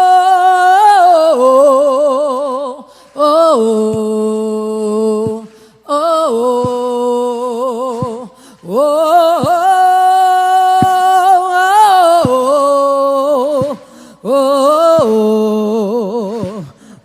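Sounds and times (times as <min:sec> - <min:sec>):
person singing unaccompanied: 0:00.0 - 0:17.0
singer breathing: 0:02.8 - 0:03.4, 0:05.4 - 0:05.9, 0:08.0 - 0:08.7, 0:13.8 - 0:14.3, 0:16.4 - 0:17.0.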